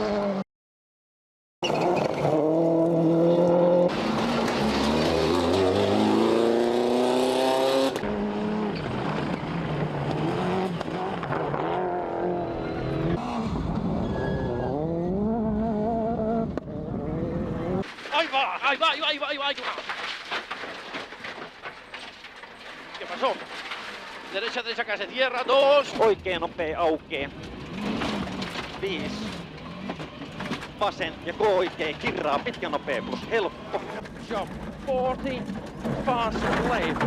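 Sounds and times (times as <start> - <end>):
rally car engines revving: 1.6 - 17.9, 25.9 - 37.0.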